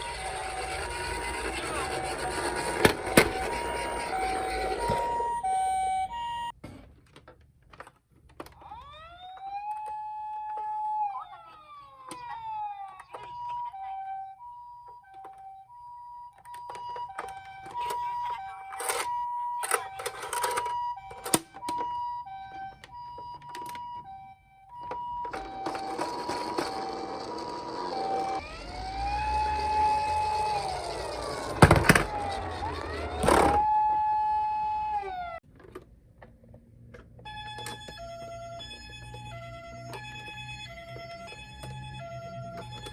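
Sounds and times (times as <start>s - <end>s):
rushing rolling noise: 0.0s - 5.2s, 25.6s - 35.4s
toys clicking and clattering: 0.0s - 5.3s, 6.7s - 13.8s, 16.3s - 23.9s, 24.8s - 42.9s
rising and falling siren: 0.0s - 6.6s, 8.6s - 35.4s, 37.3s - 42.9s
two-tone toy siren: 0.0s - 6.6s, 8.4s - 35.4s, 37.2s - 42.9s.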